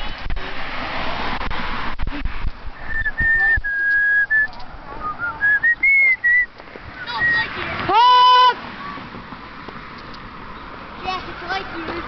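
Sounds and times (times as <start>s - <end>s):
person whistling: 2.8s - 6.5s.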